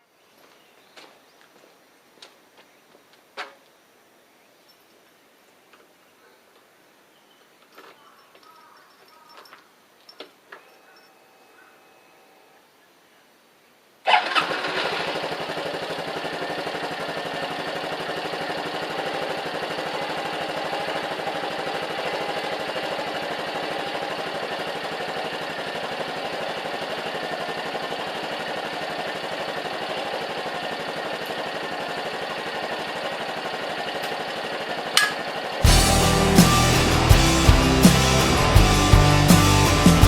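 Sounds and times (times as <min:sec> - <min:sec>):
motorcycle engine starting and idling: 0:14.1 - 0:40.0.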